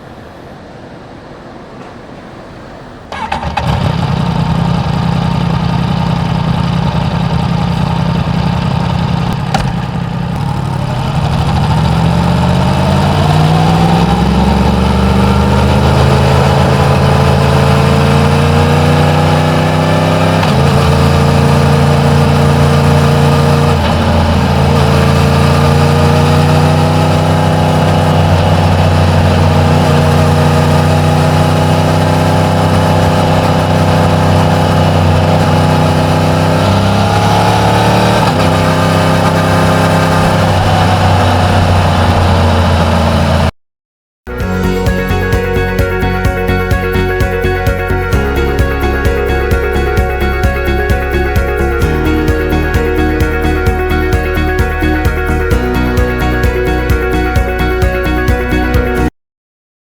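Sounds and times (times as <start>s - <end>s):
motorcycle engine running: 3.1s - 43.5s, 44.3s - 59.1s.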